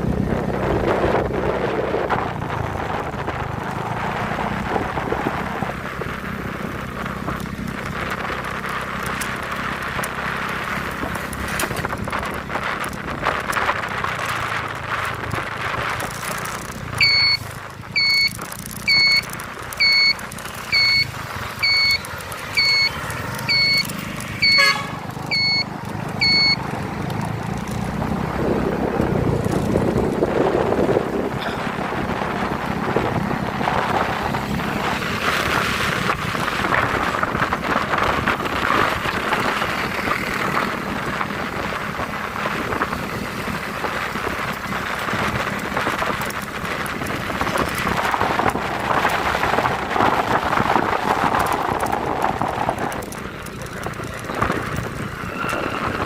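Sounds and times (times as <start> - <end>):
road and wind noise: 0.0 - 56.0
vehicle engine hum: 0.0 - 56.0
electronic beeper beeping: 17.0 - 26.6.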